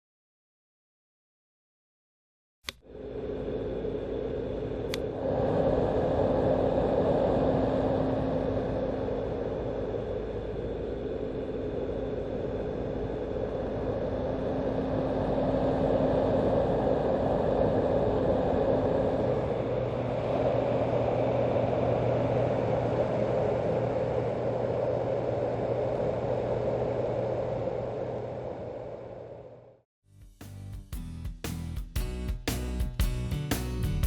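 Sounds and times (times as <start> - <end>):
faint hum: 2.7 - 29.8
low rushing noise: 2.8 - 29.8.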